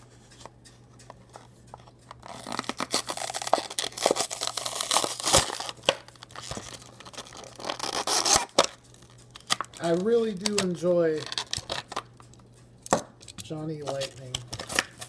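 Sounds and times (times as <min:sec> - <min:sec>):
plastic crinkling: 0:01.3 - 0:12.4
package tearing open: 0:02.1 - 0:12.1, 0:13.8 - 0:15.0.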